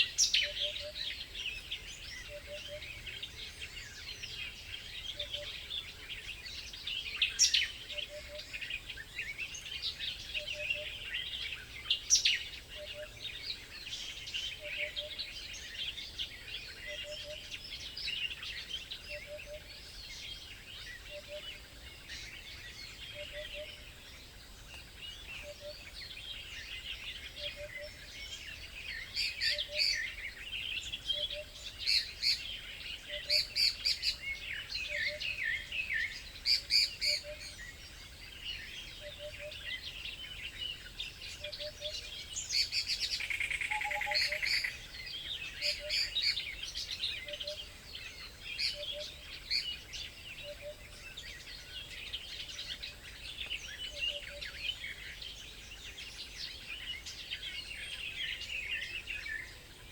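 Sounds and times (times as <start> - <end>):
small birds chirping: 0.0 - 59.9.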